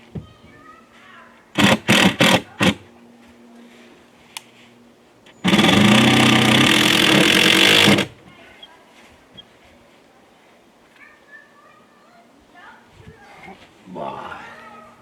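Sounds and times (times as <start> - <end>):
handheld power tool running: 1.6 - 2.9, 5.4 - 8.2.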